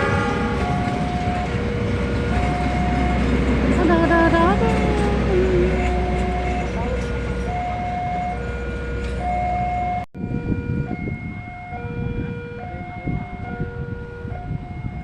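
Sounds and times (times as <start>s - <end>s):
two-tone warning alarm: 0.0s - 15.0s.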